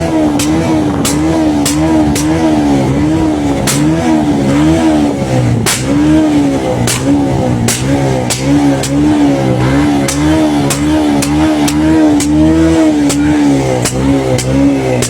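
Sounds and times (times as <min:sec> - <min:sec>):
exhaust backfire pops: 0:00.0 - 0:15.0
motorcycle engine revving: 0:00.0 - 0:15.0.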